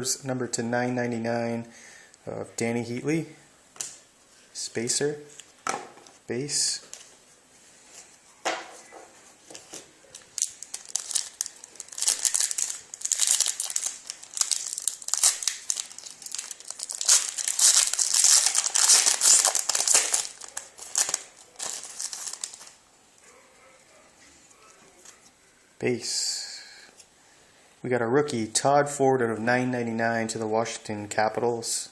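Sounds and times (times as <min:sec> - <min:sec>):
card pack wrapper tearing: 0:10.1 - 0:22.8.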